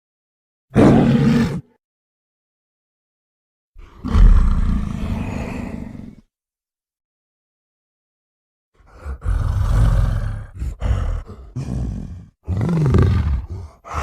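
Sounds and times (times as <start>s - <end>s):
deep gorilla roar: 0.7s - 1.7s, 3.8s - 6.3s, 8.8s - 14.0s.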